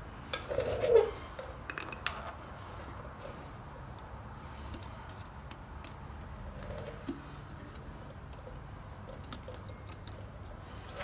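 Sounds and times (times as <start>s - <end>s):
light clicks and taps of tools: 1.4s - 6.0s.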